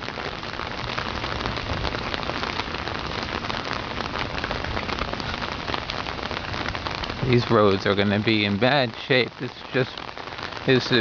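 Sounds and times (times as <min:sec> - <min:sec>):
heavy rain on an umbrella: 0:00.0 - 0:11.0.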